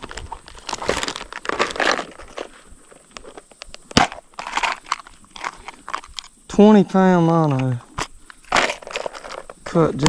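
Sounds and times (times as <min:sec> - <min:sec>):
rustling crinkling handling noise: 0:00.0 - 0:06.4, 0:07.5 - 0:09.7.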